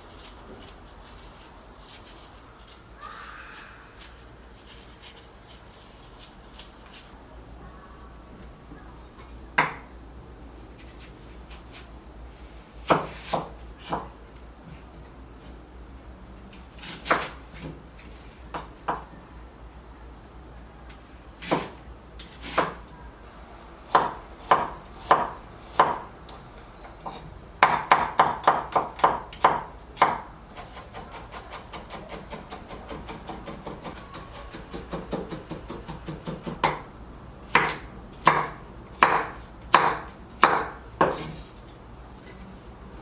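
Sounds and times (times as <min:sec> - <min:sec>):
knife chopping on cutting board: 0:12.8 - 0:14.1, 0:16.8 - 0:17.4, 0:27.1 - 0:36.9, 0:37.5 - 0:41.4.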